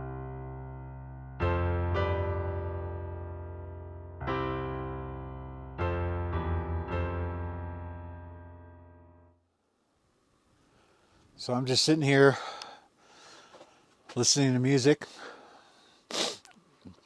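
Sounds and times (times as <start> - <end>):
slow electric piano chords: 0.0 - 9.3.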